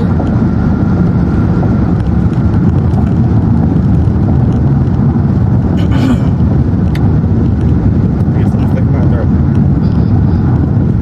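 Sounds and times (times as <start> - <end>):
road and engine rumble: 0.0 - 11.0
person coughing: 5.8 - 6.4.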